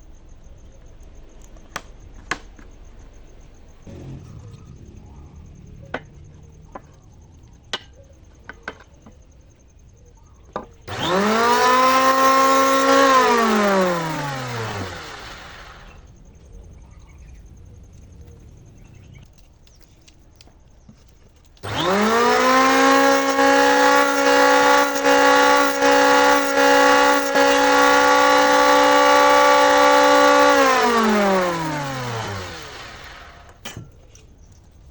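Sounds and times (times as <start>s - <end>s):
table saw whine: 10.6s - 16.1s, 21.6s - 34.0s.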